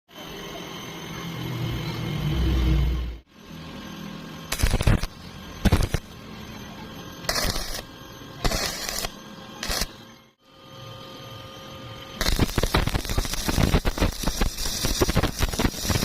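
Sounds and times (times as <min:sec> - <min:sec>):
steady hum: 0:00.1 - 0:16.0
arc welding crackle: 0:04.5 - 0:06.2, 0:07.2 - 0:10.0, 0:11.9 - 0:16.0.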